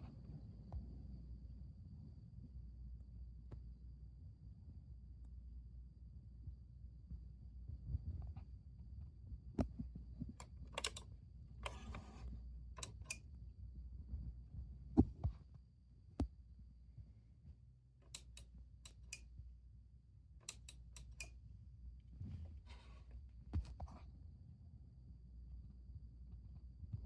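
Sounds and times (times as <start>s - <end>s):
sharp clicks and light taps: 10.4s - 11.0s, 18.0s - 19.3s, 20.4s - 21.3s.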